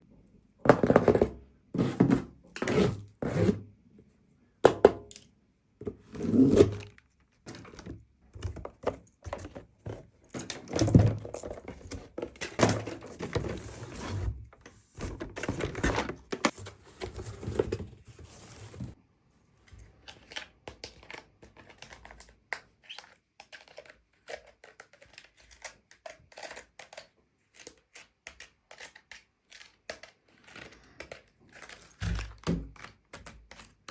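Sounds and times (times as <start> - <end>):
cardboard and plastic thunks: 5.8 - 19.0.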